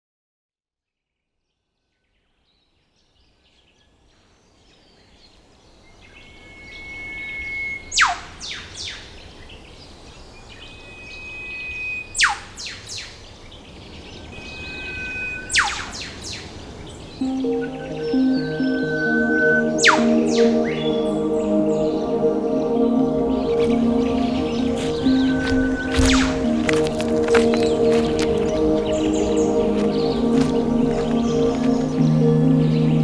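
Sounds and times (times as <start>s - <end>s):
bird whistle ending in whip-crack: 7.4s - 8.4s, 14.6s - 16.4s
music: 17.2s - 33.0s.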